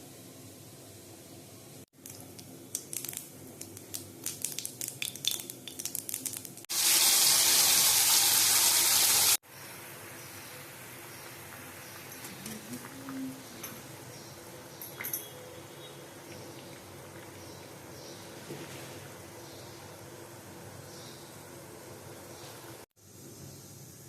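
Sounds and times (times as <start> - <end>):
kitchen utensils clinking: 12.0 - 16.4.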